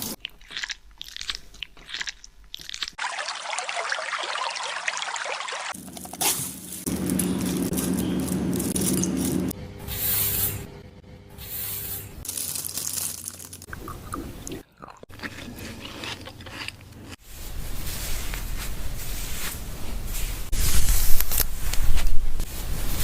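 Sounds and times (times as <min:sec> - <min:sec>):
low steady hum: 0:05.8 - 0:20.3.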